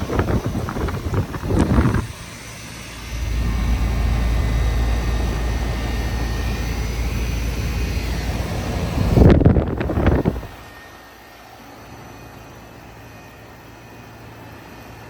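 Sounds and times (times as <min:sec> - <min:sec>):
low machine hum: 0:00.0 - 0:15.0
noisy rush: 0:02.9 - 0:10.9.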